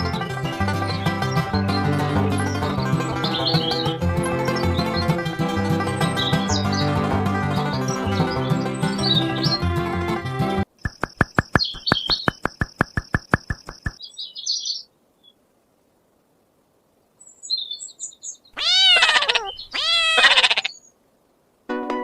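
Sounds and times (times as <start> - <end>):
drawn-out animal calls: 0.0 - 9.7, 18.6 - 20.8
high bird-like chirps: 2.4 - 5.1, 10.8 - 15.4, 17.2 - 21.0
rapid even clicking: 10.8 - 14.0.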